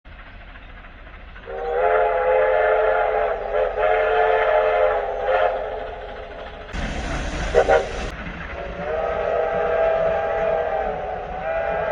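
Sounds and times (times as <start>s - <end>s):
train horn blasts: 1.4s - 5.8s, 8.8s - 11.9s.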